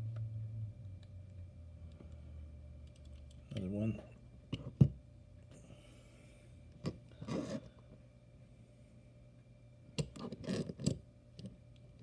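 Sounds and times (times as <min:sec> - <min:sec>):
rubbing scrape: 0:07.2 - 0:07.7.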